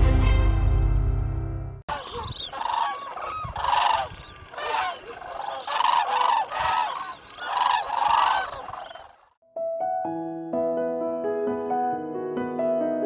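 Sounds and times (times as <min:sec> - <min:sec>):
waterbirds honking: 0:01.9 - 0:09.4.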